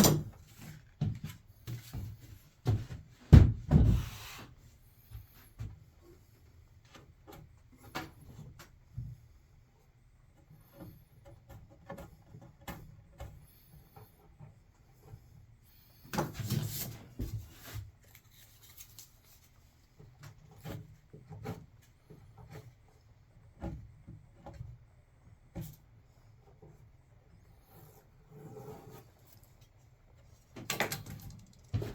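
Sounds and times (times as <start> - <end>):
wood scraping: 27.5 - 30.5.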